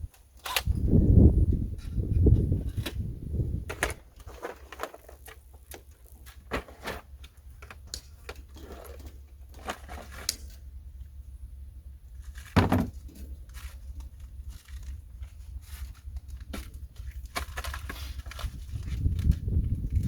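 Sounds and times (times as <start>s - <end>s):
steady low hum: 5.9s - 20.0s
heavier thump: 12.6s - 13.0s.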